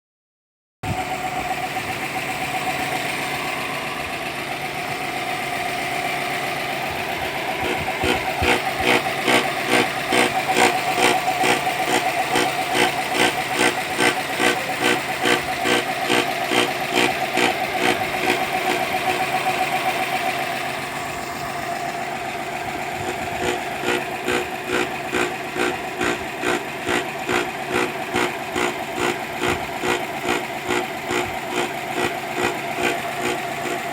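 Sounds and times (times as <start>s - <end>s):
car engine idling: 0.8s - 33.9s
rhythmic engine mount knock: 6.5s - 20.4s, 21.6s - 33.9s.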